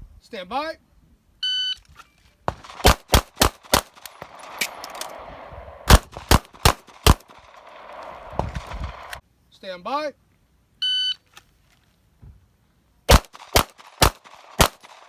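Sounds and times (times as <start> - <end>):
pistol shots: 2.5 - 9.2, 13.1 - 15.0.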